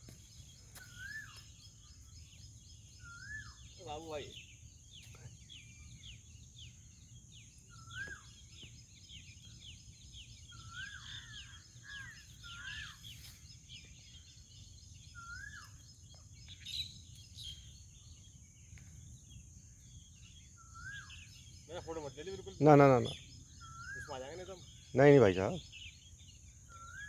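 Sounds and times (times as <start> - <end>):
birds chirping: 0.0 - 27.0
rising and falling bird call: 0.7 - 1.7, 10.5 - 13.3, 26.6 - 27.0.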